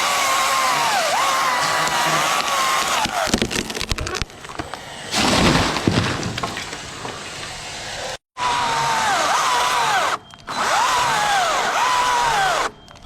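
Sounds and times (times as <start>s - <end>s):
chainsaw running: 0.0s - 3.6s, 8.4s - 12.8s
tree cracking: 0.2s - 7.5s
tree crashing down: 0.4s - 7.8s.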